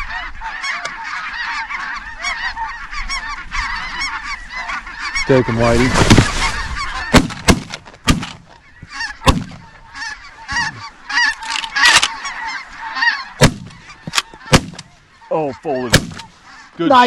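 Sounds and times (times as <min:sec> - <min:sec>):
geese calling in high yelps: 0:00.0 - 0:17.0
shotgun shots: 0:07.1 - 0:08.5, 0:09.2 - 0:09.7, 0:13.4 - 0:14.9, 0:15.9 - 0:16.3.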